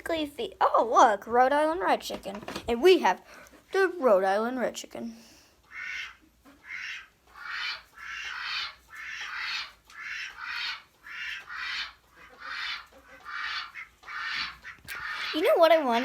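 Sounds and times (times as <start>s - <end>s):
duck quacking: 5.7s - 16.0s.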